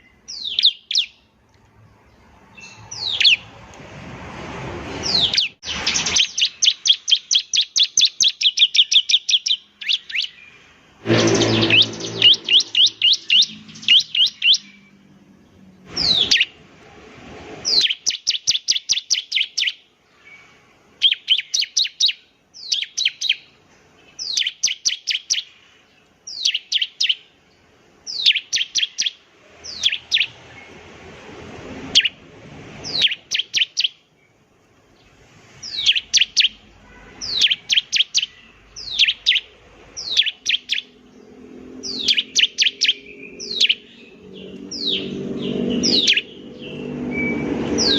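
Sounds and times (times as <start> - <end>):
bird singing high chirps: 0.0 - 1.3, 2.5 - 3.5, 5.0 - 15.1, 16.0 - 16.6, 17.6 - 25.6, 26.3 - 27.3, 28.1 - 30.8, 31.9 - 32.2, 32.8 - 34.4, 35.0 - 47.9.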